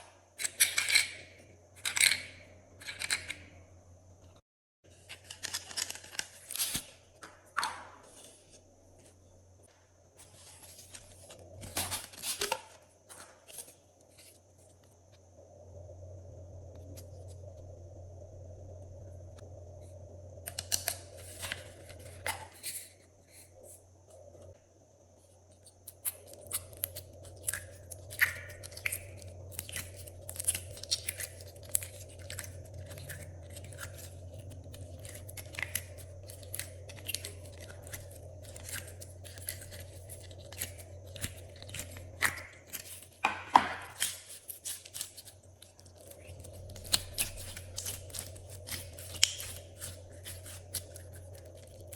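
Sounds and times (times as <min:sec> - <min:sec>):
slime crackling and popping: 0:26.4 - 0:51.9.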